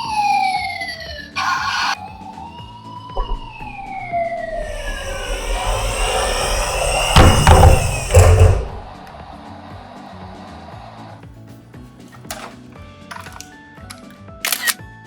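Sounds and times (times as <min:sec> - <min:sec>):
fire engine siren wailing: 0:00.0 - 0:09.0
loud bursts with low rumble: 0:03.2 - 0:09.1
rushing noise: 0:03.2 - 0:09.1.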